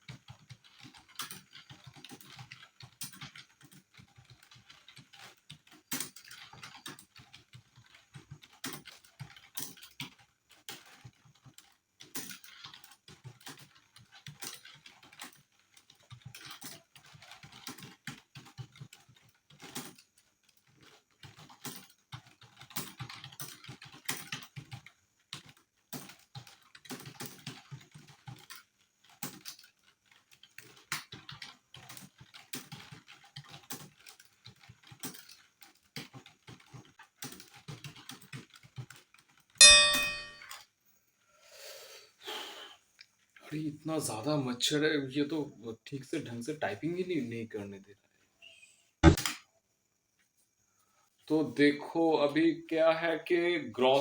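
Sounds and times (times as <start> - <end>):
fast typing on keyboard: 0.0 - 40.3, 51.3 - 54.0.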